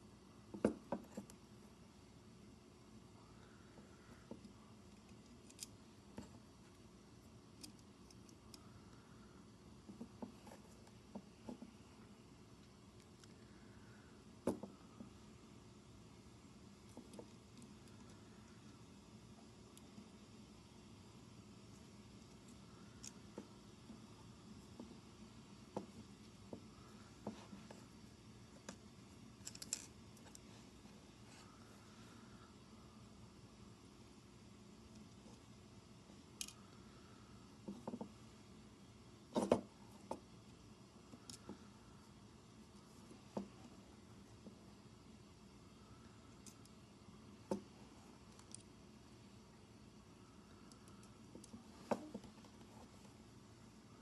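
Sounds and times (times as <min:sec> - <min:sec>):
small plastic parts clicking: 0:04.3 - 0:06.3, 0:07.6 - 0:08.6, 0:29.4 - 0:30.4, 0:36.4 - 0:36.7.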